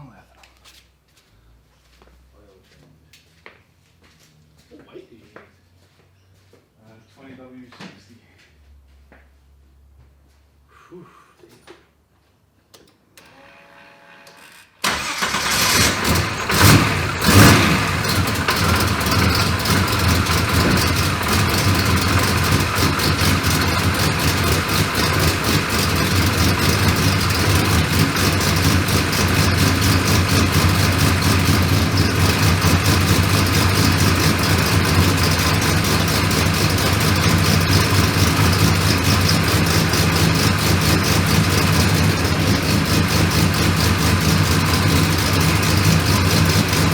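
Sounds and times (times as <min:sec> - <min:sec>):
car engine cranking and idling: 0:14.8 - 0:46.9
engine revving: 0:14.8 - 0:46.9.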